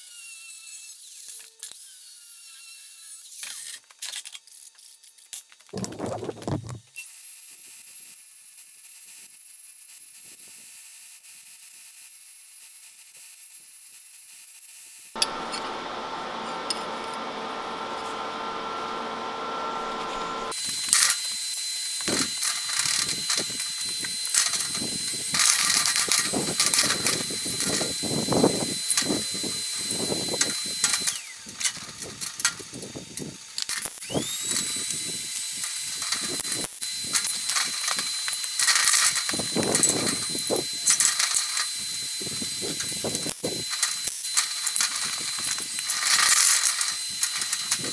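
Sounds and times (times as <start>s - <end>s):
faint steady machine hum: 15.2s - 21.1s
machine running steadily: 15.2s - 32.6s
high whine of power tool: 15.2s - 47.9s.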